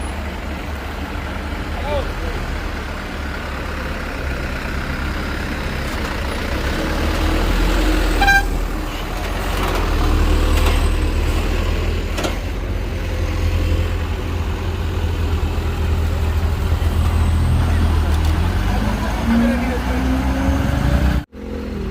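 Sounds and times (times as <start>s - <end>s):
diesel engine rumbling: 0.0s - 21.9s
horn toot: 8.1s - 8.6s.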